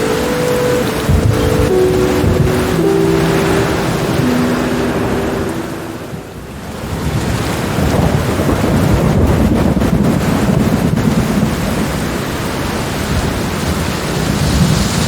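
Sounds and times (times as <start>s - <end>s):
soft held notes: 0.0s - 6.6s
heavy rain: 0.0s - 15.0s
low rumble of thunder: 1.0s - 3.8s, 6.7s - 15.0s.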